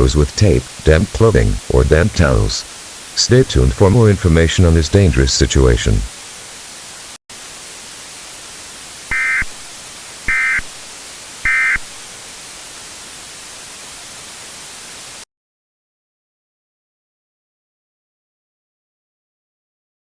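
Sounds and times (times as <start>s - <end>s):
static hiss: 0.0s - 15.3s
digital data bursts: 9.1s - 9.6s, 10.2s - 12.0s.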